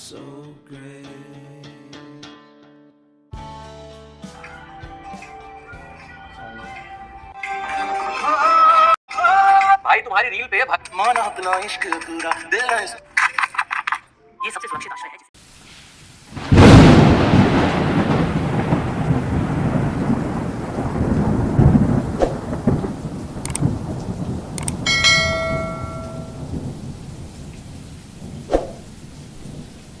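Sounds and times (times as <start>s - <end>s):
steady rain: 15.4s - 30.0s
thunder rumbling: 16.3s - 30.0s
short ringing tone: 24.9s - 26.4s.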